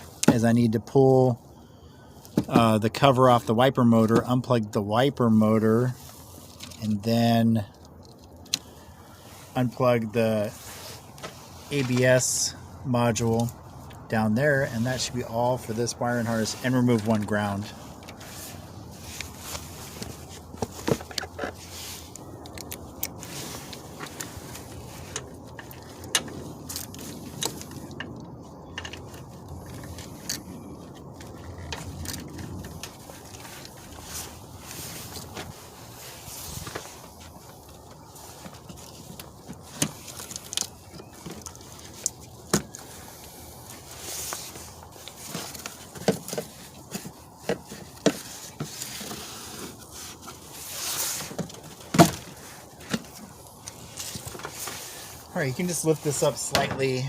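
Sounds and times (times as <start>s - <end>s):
rustle of handling wiring: 0.0s - 57.0s.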